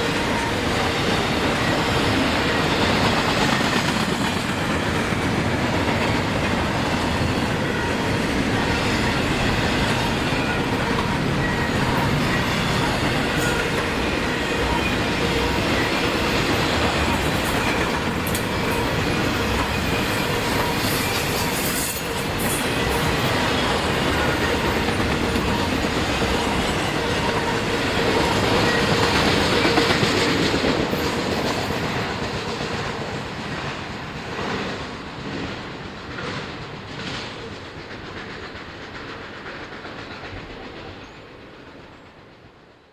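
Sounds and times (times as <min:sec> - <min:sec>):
train wheels clattering on rails: 0:00.0 - 0:42.9.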